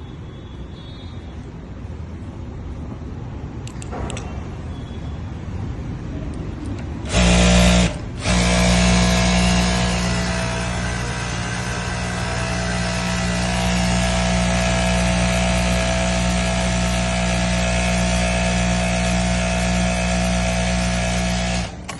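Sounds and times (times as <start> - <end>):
industrial sewing machine running: 7.0 - 21.9.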